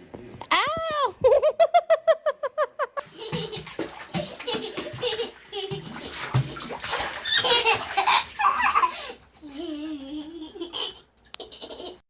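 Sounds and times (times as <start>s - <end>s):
person laughing: 1.2s - 3.6s.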